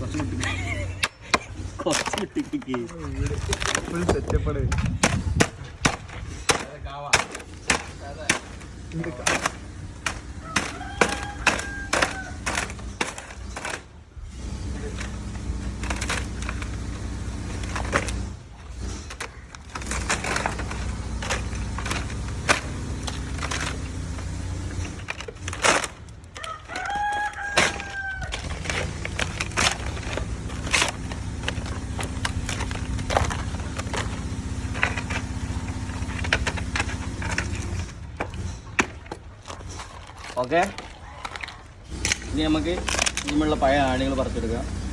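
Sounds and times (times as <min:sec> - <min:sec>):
steady low hum: 0:00.0 - 0:44.9
rooster crowing: 0:10.2 - 0:12.9, 0:26.3 - 0:29.2.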